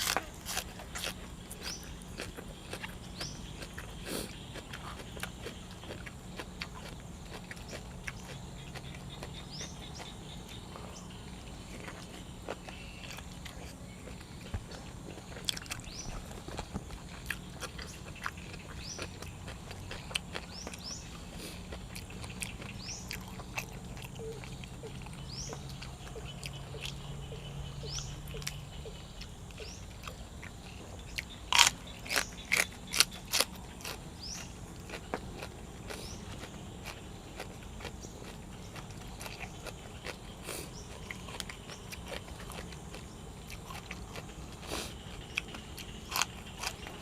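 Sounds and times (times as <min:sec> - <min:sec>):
sharp crunches: 0:00.0 - 0:11.0, 0:29.6 - 0:47.0
person chewing food: 0:00.0 - 0:47.0.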